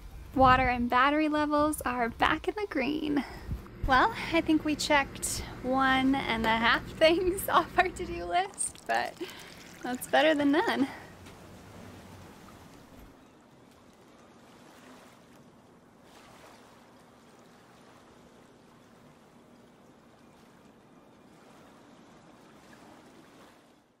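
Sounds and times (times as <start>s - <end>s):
faint low hum: 0.0s - 16.0s
faint wash of water: 7.5s - 24.0s.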